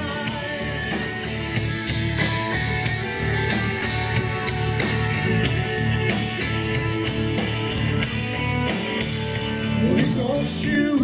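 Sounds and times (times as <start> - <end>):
country-rock band playing: 0.0 - 11.0
guitars: 0.0 - 11.0.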